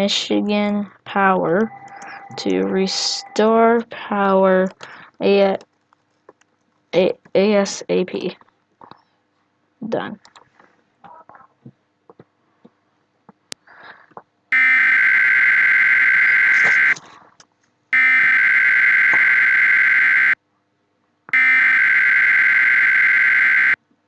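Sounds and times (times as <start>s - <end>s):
harsh buzzy two-tone data bursts: 14.6s - 17.0s, 18.0s - 20.4s, 21.4s - 23.8s.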